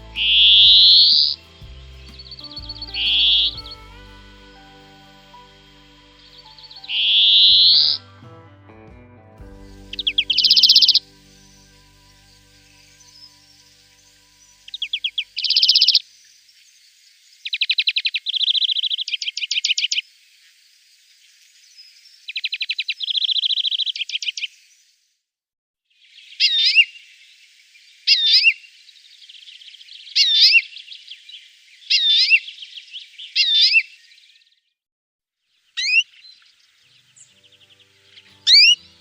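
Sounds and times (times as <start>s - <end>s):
finch sweeping calls: 0.0s - 4.5s, 9.6s - 16.0s, 35.8s - 39.0s
finch trilling song: 0.0s - 8.7s, 9.4s - 16.6s, 35.6s - 39.0s.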